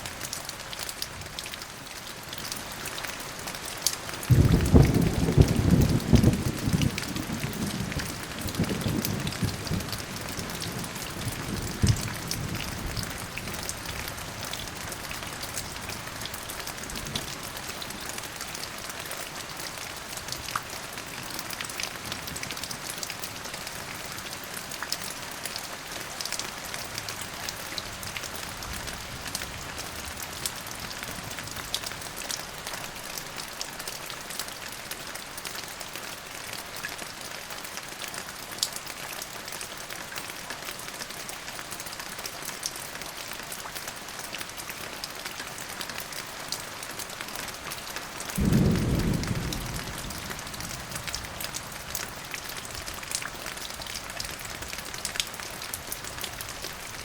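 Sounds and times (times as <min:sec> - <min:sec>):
steady rain falling: 0:00.0 - 0:57.0
low thunder rumble: 0:04.3 - 0:13.1, 0:48.4 - 0:51.8.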